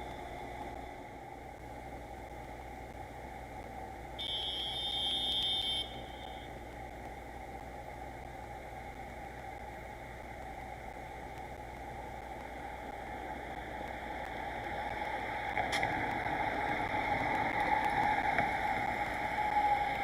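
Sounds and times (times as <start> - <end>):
train rolling: 12.1 - 20.0.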